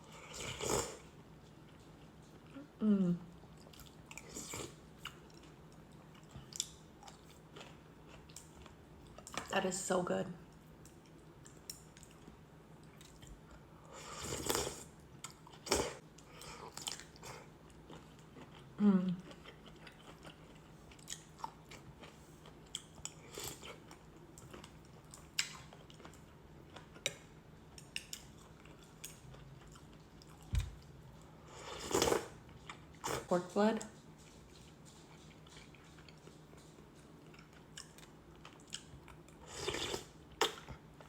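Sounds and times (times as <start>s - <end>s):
slurping noodles: 0.2s - 1.1s, 14.0s - 14.9s, 31.6s - 32.4s, 39.5s - 40.1s
chewing with wet mouth clicks: 3.6s - 9.5s, 10.5s - 13.6s, 15.2s - 30.8s, 33.9s - 41.0s.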